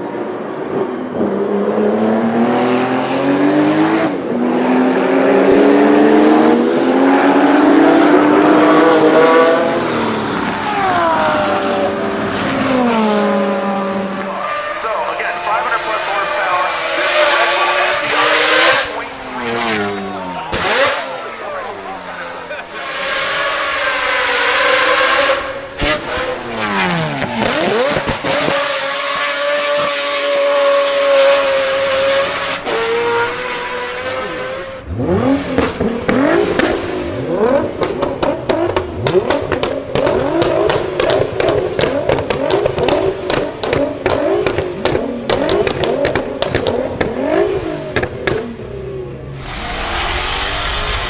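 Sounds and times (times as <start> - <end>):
car engine revving: 0.2 - 51.0
exhaust pops and crackles: 35.5 - 36.9, 37.8 - 47.2, 47.9 - 48.6.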